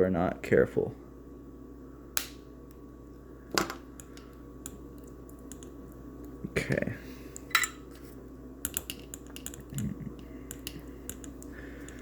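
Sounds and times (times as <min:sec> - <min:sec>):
small tools clicking and tapping: 0:08.6 - 0:12.0.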